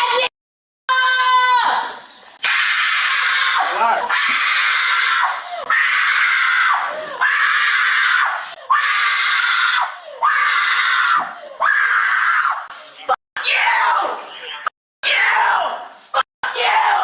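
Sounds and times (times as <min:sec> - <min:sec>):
short breaths: 0:05.4 - 0:05.7, 0:06.9 - 0:07.2, 0:08.4 - 0:08.7, 0:09.9 - 0:10.2, 0:11.3 - 0:11.6.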